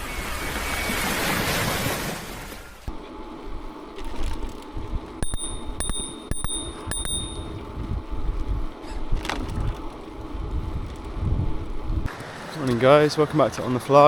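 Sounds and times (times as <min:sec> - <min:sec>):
low rumble of riding: 0:02.7 - 0:14.0
bike bell dinging: 0:05.2 - 0:07.7.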